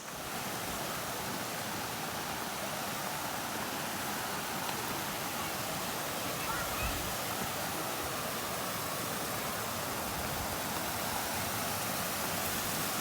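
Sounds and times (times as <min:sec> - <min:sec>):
fast-flowing water rushing: 0:00.0 - 0:13.0.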